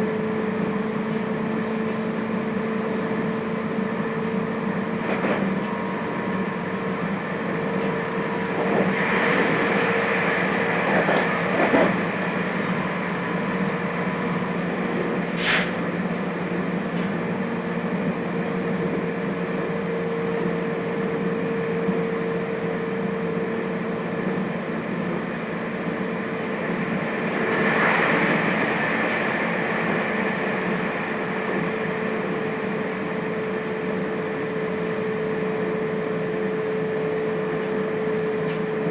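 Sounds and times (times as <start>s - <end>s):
wheels rumbling on rail: 0.0s - 38.9s
short sharp hiss: 15.4s - 15.8s.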